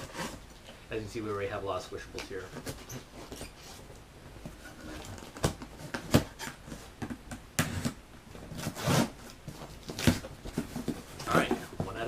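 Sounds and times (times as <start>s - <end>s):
cardboard box knocks and rustles: 9.5s - 12.0s.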